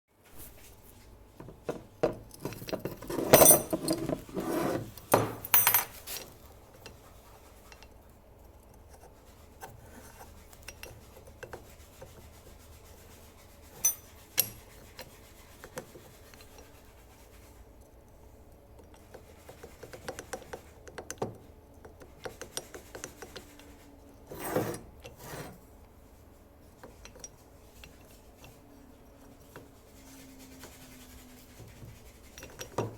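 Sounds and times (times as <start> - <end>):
hard parts rubbing and clinking: 1.4 - 7.9, 13.7 - 15.1, 31.5 - 32.9.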